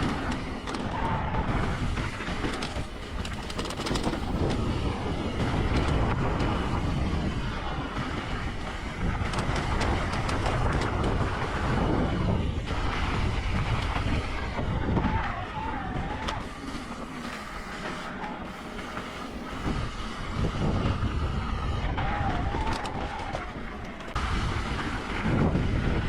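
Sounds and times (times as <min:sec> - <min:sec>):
bike rattling: 0:00.0 - 0:26.0
tyres rolling on dirt: 0:00.0 - 0:26.0
wind on microphone: 0:00.0 - 0:26.0.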